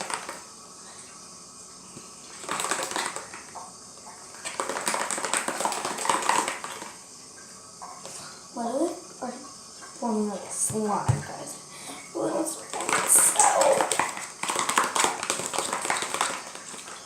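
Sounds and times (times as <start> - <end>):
stirring thick soap mixture: 2.2 - 3.6, 4.2 - 7.0, 12.2 - 17.0.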